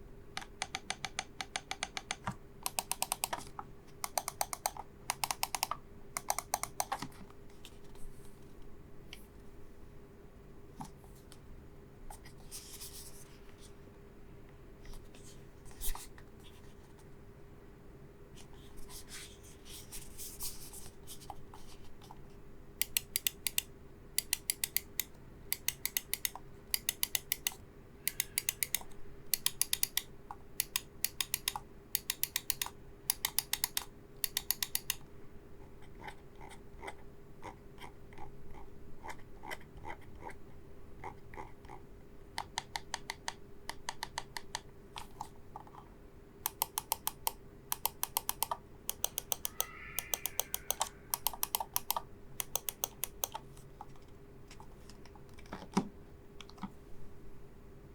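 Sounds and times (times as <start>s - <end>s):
faint steady hum: 0.0s - 57.9s
rapid sharp mouse clicking: 0.4s - 7.0s, 22.8s - 35.0s, 42.4s - 45.3s, 46.4s - 53.6s
dull mouse clicks: 0.4s - 7.1s, 22.8s - 35.0s, 42.4s - 45.8s, 46.4s - 55.8s
scratchy mouse handling noise: 49.0s - 52.0s.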